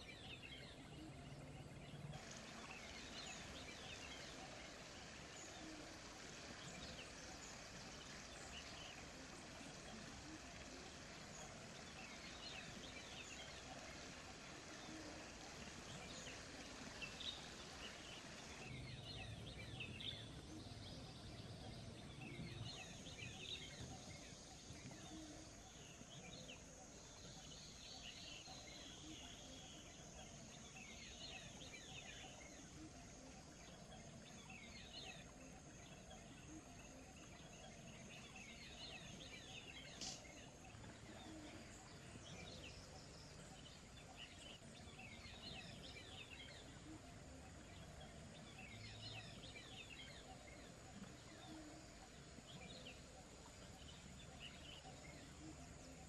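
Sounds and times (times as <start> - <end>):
birds chirping: 0.0 - 56.0
running water hiss: 0.0 - 56.0
sharp click: 40.0 - 40.2.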